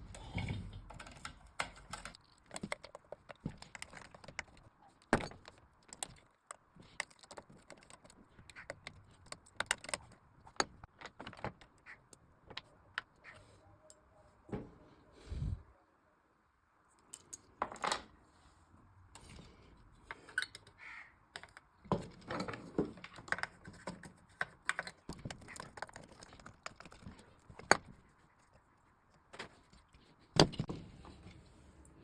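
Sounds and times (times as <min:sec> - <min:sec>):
tools and metal parts clinking: 0:00.0 - 0:13.1, 0:21.4 - 0:28.0.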